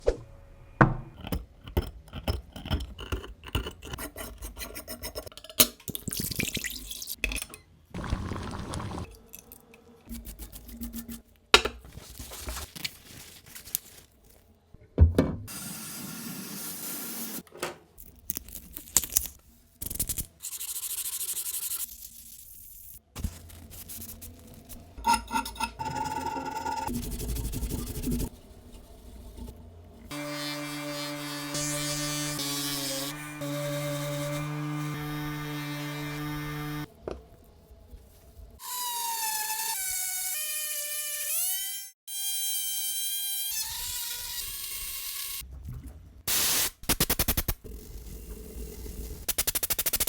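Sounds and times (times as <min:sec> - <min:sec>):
rubbing filing and sanding metal: 0:03.8 - 0:05.3, 0:10.1 - 0:11.3.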